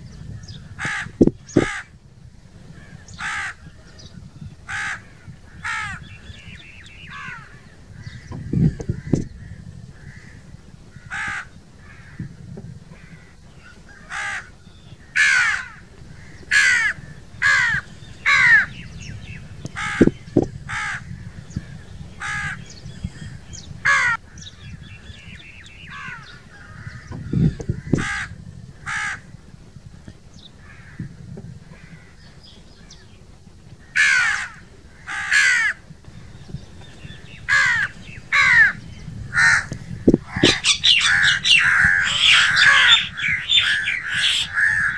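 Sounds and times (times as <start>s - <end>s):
crows cawing: 0.6s - 2.0s, 2.8s - 3.7s, 4.7s - 12.3s, 12.9s - 19.1s, 19.7s - 21.3s, 22.2s - 22.7s, 23.8s - 24.9s, 25.8s - 29.3s, 30.6s - 31.1s, 31.7s - 32.2s, 33.8s - 35.9s, 37.3s - 44.9s.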